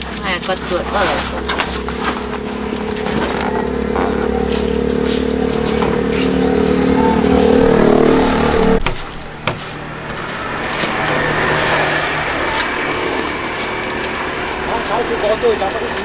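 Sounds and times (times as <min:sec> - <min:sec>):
motor running: 0:00.0 - 0:16.0
sharp knocks: 0:00.6 - 0:12.4.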